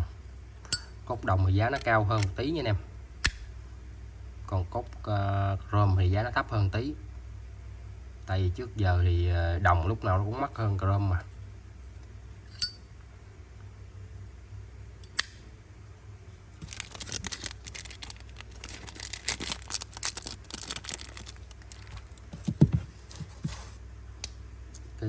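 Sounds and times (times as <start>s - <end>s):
crinkly rustling: 16.6s - 23.8s
thumps: 20.8s - 23.8s.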